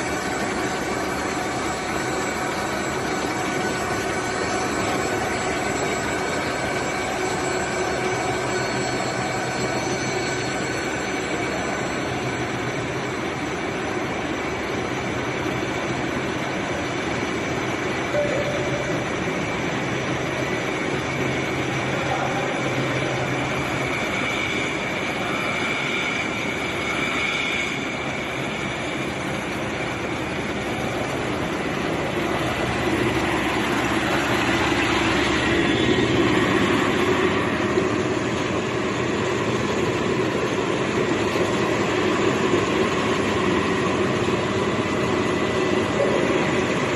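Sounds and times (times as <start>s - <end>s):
faint high whine: 0.0s - 46.9s
low hum: 17.9s - 46.9s.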